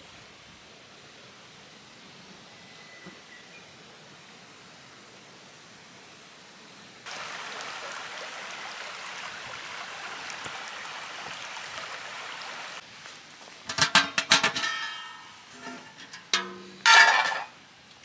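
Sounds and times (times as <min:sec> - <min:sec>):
steady hiss: 0:00.0 - 0:16.6.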